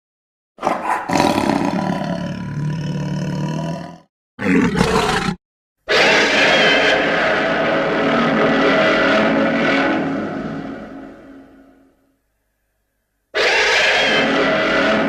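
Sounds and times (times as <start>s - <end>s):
monster roar: 1.1s - 11.5s, 13.4s - 15.0s
steady loud sound: 6.3s - 12.2s.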